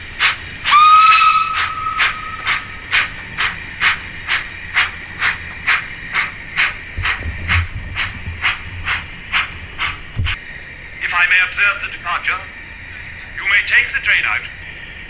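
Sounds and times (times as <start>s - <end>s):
continuous steam hiss: 0.0s - 15.0s
model steam locomotive chuffing: 0.0s - 15.0s
low rumble: 1.4s - 11.0s.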